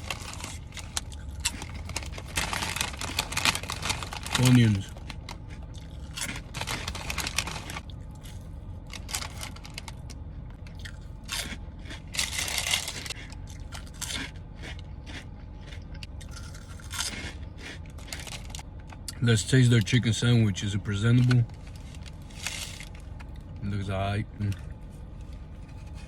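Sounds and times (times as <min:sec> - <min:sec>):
person chewing sandwich: 0:00.0 - 0:19.2.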